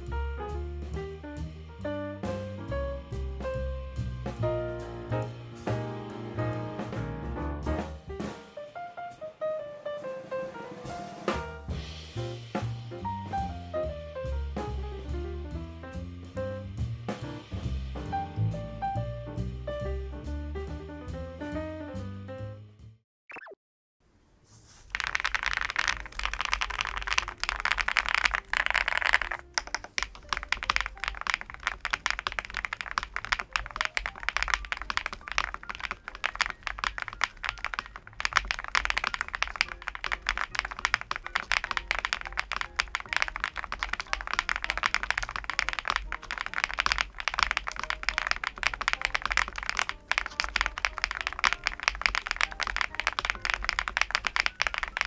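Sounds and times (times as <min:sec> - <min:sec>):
mechanical keyboard typing: 0:24.6 - 0:55.0.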